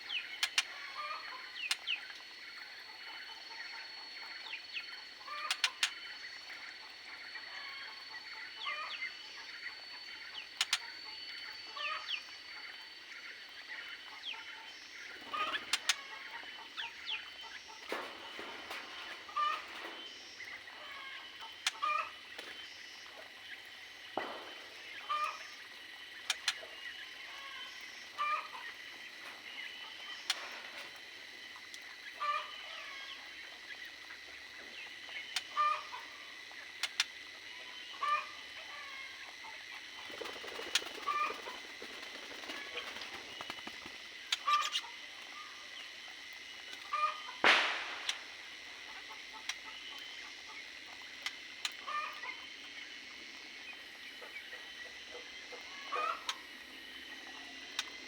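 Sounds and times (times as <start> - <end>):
chickens clucking: 14.0 - 23.4, 24.2 - 52.6, 54.2 - 58.0
loud crack: 47.4 - 48.4.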